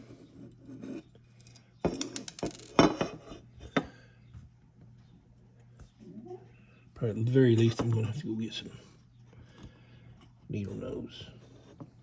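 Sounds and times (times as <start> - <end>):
metal parts clinking and clicking: 1.4 - 2.8.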